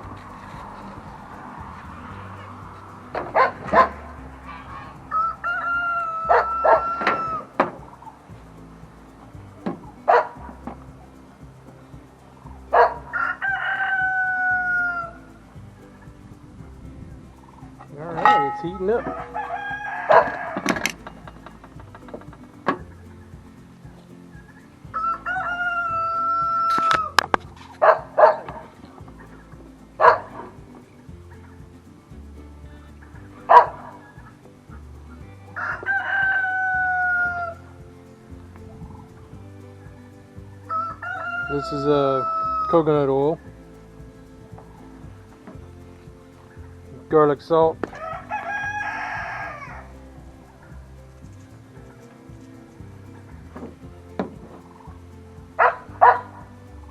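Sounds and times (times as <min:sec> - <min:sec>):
rooster crowing: 0:01.5 - 0:08.2, 0:12.7 - 0:15.4, 0:18.2 - 0:21.5, 0:24.9 - 0:28.6, 0:35.6 - 0:37.6, 0:40.7 - 0:42.8, 0:47.9 - 0:50.0.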